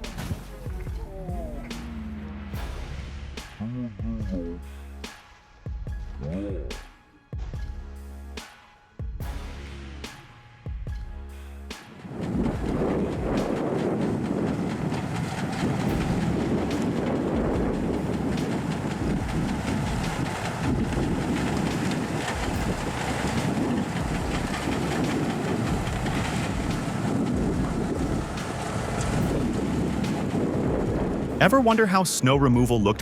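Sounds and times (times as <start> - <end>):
heavy machine rumbling: 0.0 - 5.0, 12.0 - 33.0
clattering rattle: 12.0 - 31.4.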